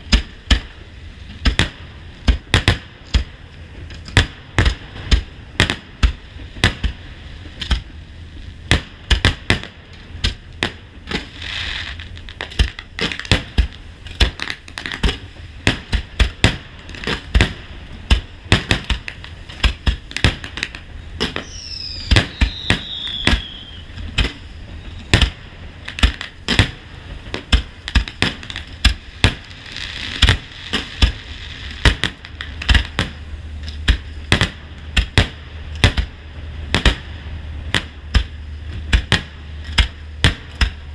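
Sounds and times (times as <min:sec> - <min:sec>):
fireworks bursts and cracks: 0:00.0 - 0:40.9
falling firework whistle: 0:21.3 - 0:25.3.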